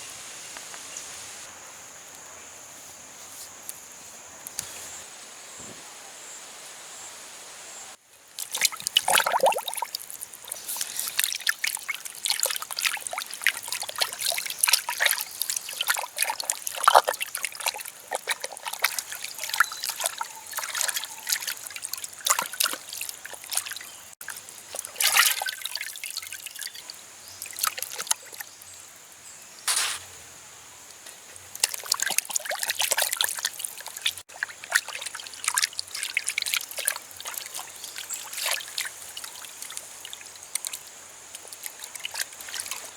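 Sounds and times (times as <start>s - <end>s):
water trickling and splashing: 8.0s - 28.8s, 30.9s - 42.9s.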